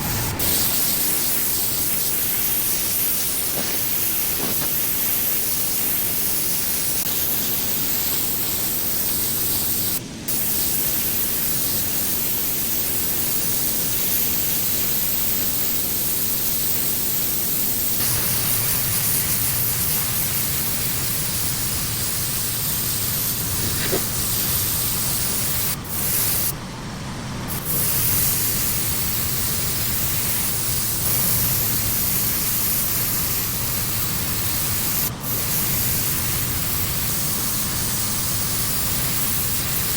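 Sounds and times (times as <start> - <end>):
low machine hum: 0.0 - 2.8, 18.0 - 32.4
pressure washer spraying: 0.0 - 26.5, 27.5 - 39.9.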